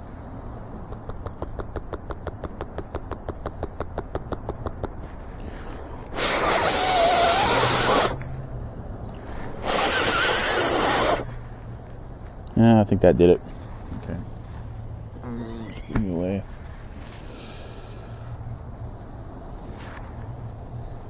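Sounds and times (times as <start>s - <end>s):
rapid even clicking: 0.8s - 5.1s, 6.2s - 8.3s, 9.6s - 11.3s
hissing air bursts with whistle: 6.1s - 8.2s, 9.6s - 11.3s.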